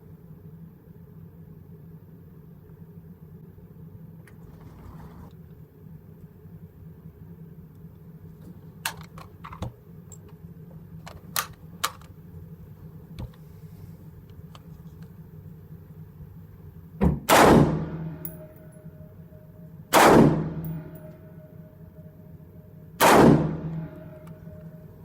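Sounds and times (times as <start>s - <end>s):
rifle shot: 17.1s - 18.5s, 19.9s - 21.1s, 23.0s - 24.6s
faint ringing tone: 18.0s - 19.9s, 20.6s - 23.0s, 23.8s - 25.0s.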